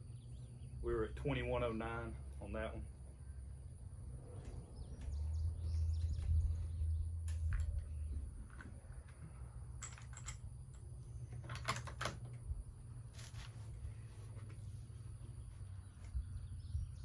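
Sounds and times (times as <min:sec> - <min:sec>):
low steady rumble: 0:00.0 - 0:17.0.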